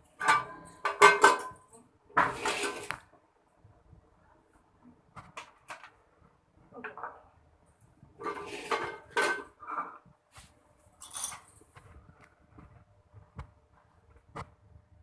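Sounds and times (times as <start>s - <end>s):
metal utensils clinking against pot: 0.0s - 3.0s, 8.2s - 10.0s, 11.0s - 11.6s.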